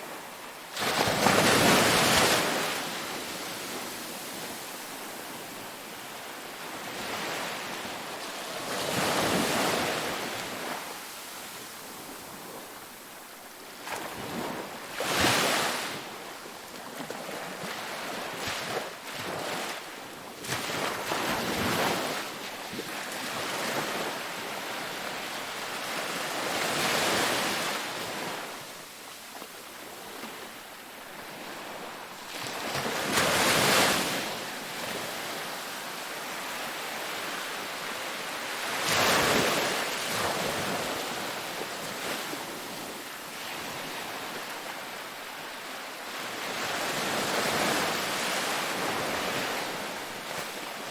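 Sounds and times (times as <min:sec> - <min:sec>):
ocean waves breaking: 0:00.0 - 0:12.8, 0:13.8 - 0:16.2.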